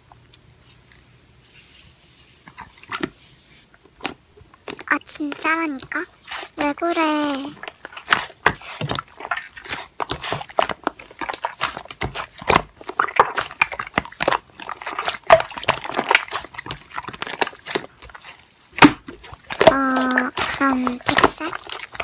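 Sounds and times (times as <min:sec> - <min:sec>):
slime squeezed by hand: 0:04.6 - 0:22.0.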